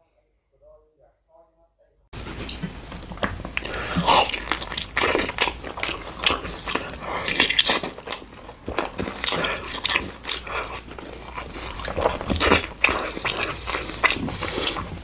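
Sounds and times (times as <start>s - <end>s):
person chewing crunchy food: 2.2s - 15.0s
wet mouth clicks: 2.2s - 15.0s.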